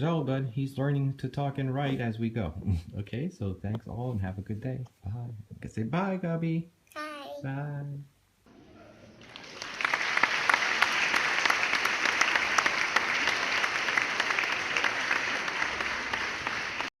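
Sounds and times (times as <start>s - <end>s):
crowd applause: 8.5s - 17.0s.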